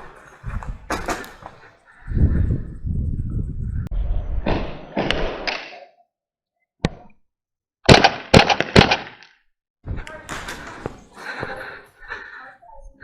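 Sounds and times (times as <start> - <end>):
airsoft gunfire cracks: 7.9 - 9.2.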